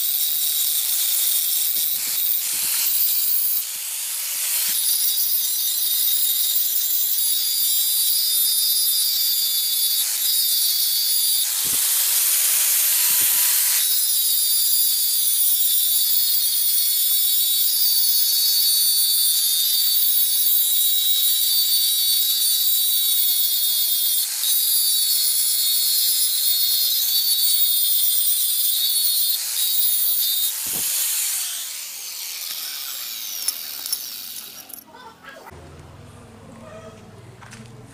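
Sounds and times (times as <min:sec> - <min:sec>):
power tool whining: 0:00.0 - 0:34.9
motor winding down: 0:29.4 - 0:34.8.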